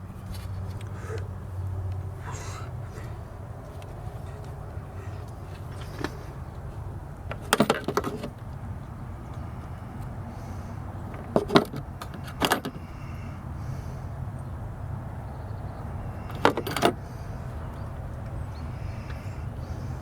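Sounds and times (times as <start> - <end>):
steady low hum: 0.0 - 7.6.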